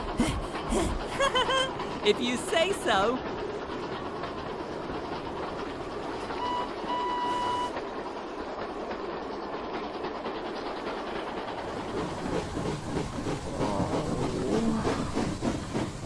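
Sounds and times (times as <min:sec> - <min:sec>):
steam engine whistle: 0:06.4 - 0:07.8.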